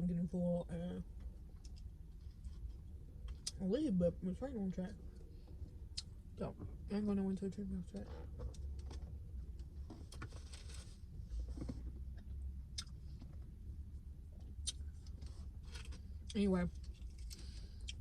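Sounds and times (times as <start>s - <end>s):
low steady rumble: 0.0s - 18.0s
mouth clicks and smacks: 14.5s - 14.9s.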